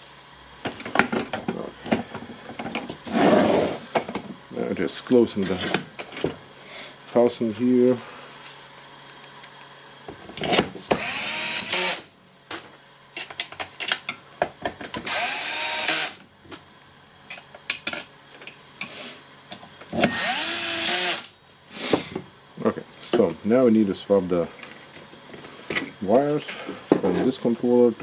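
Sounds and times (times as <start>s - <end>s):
electric screwdriver whirring: 10.9s - 12.1s, 15.1s - 16.2s, 20.1s - 21.3s.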